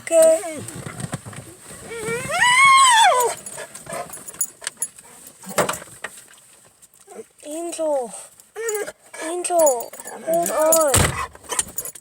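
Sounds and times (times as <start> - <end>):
dog whining: 1.8 - 4.1, 8.6 - 11.8.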